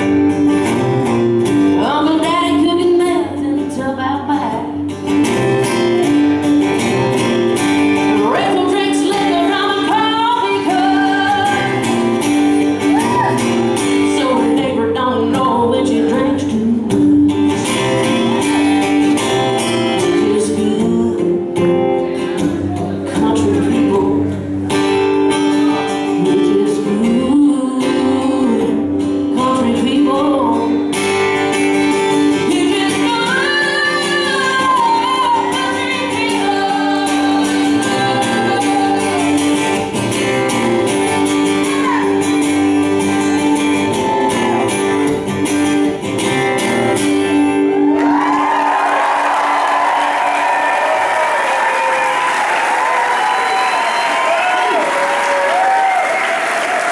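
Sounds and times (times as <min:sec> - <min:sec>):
guitar: 0:00.0 - 0:56.9
woman singing: 0:01.7 - 0:05.0, 0:08.0 - 0:18.0, 0:20.0 - 0:21.7, 0:23.0 - 0:24.4, 0:25.9 - 0:31.0, 0:32.1 - 0:39.8, 0:41.2 - 0:44.8.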